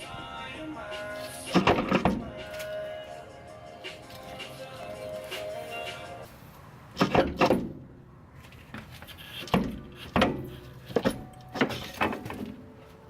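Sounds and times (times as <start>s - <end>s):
metal clanks and knocks: 9.4s - 12.6s.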